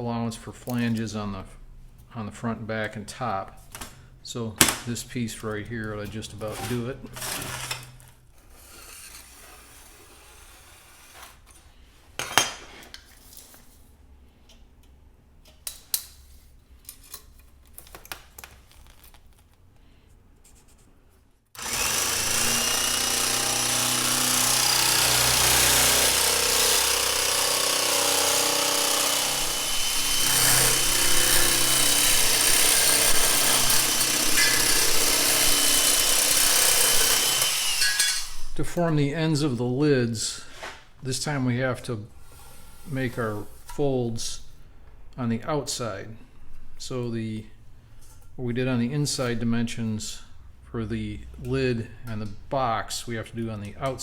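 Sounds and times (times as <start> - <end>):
power tool running: 21.6 - 38.5.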